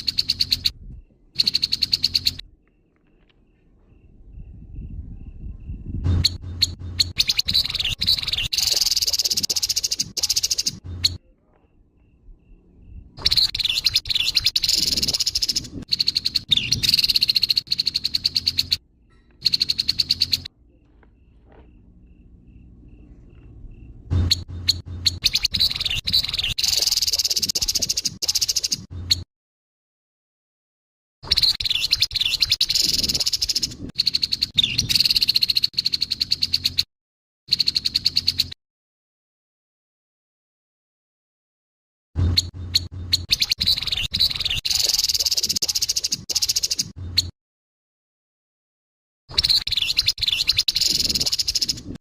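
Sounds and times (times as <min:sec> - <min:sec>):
bird rattling chatter: 0:06.2 - 0:11.2.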